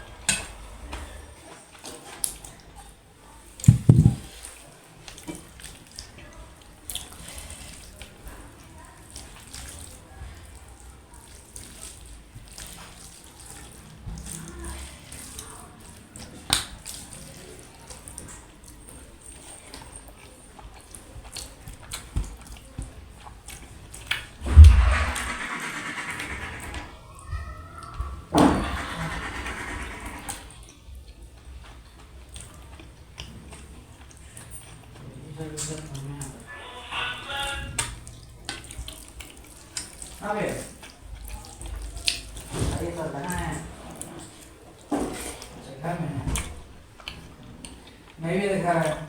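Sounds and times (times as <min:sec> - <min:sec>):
low thumps: 0:03.7 - 0:04.3, 0:24.4 - 0:27.0.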